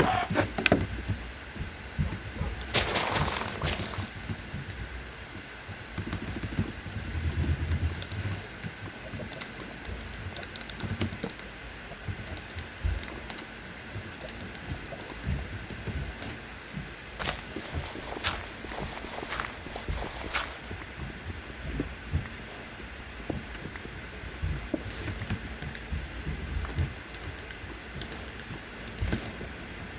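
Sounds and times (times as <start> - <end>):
light irregular clicks and taps: 5.9 - 13.5, 26.6 - 29.4
dull low thumps: 16.8 - 24.9.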